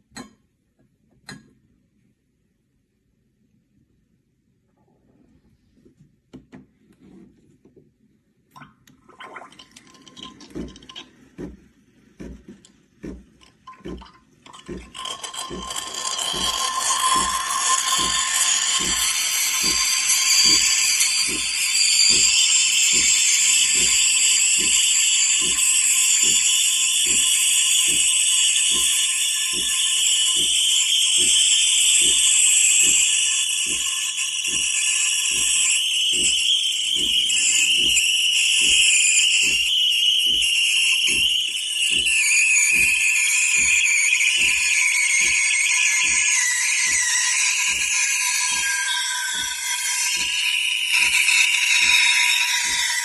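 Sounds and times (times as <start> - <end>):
espresso pump pulsing: 9.3 - 11.6, 12.2 - 53.0
steam wand hissing: 14.7 - 53.0.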